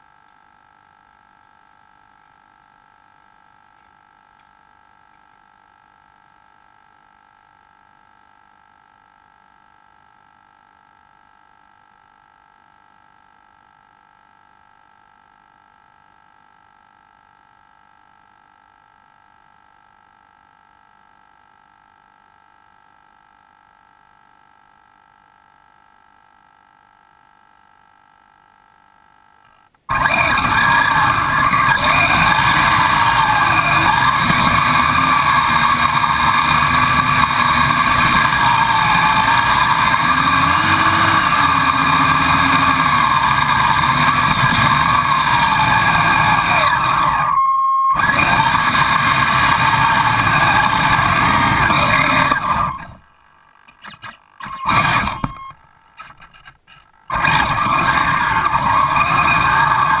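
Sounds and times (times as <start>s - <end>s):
radio hiss: 29.6s - 60.0s
wavering motor whine: 29.9s - 60.0s.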